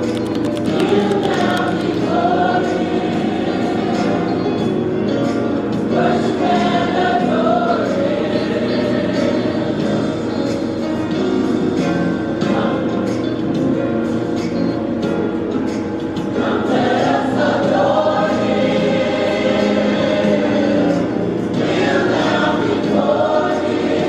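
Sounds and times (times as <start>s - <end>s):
choir singing gospel music: 0.0s - 14.2s, 15.8s - 24.0s.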